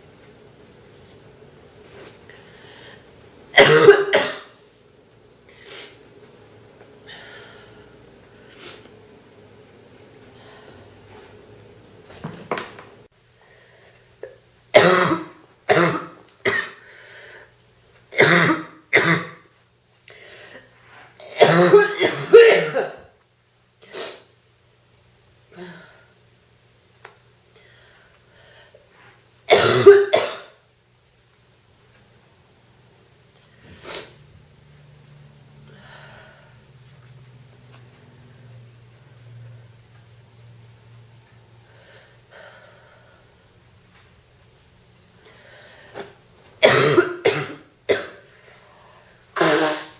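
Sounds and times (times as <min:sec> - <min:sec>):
low steady hum: 0:00.0 - 0:49.9
woman coughing: 0:03.6 - 0:04.6, 0:14.8 - 0:16.8, 0:18.2 - 0:19.4, 0:21.2 - 0:23.1, 0:29.5 - 0:30.6, 0:46.6 - 0:48.2
breathy exhale: 0:35.7 - 0:36.6, 0:45.3 - 0:46.1.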